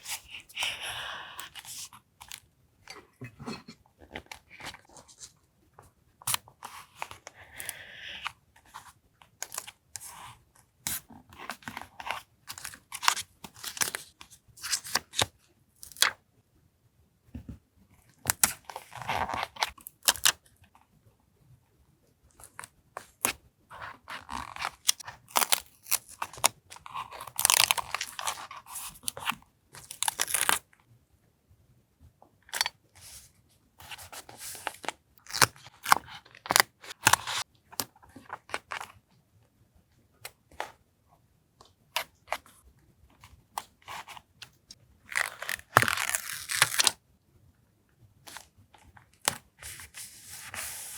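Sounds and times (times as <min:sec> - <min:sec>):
paper tearing and crinkling: 0:45.1 - 0:46.9.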